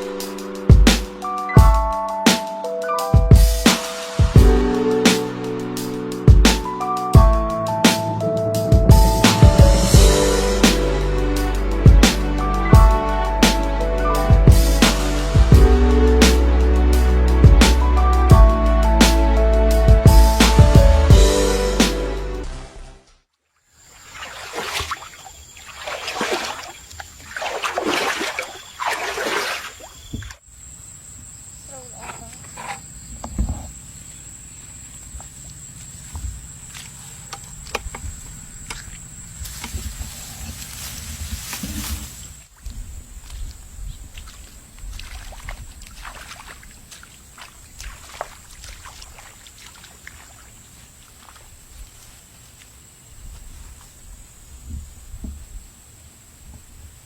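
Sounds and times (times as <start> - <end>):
muddy water splashing: 23.9 - 30.4, 35.1 - 54.1.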